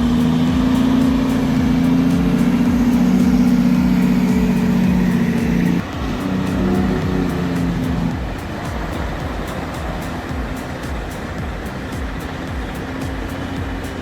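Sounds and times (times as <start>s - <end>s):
truck diesel engine running: 0.0s - 14.0s.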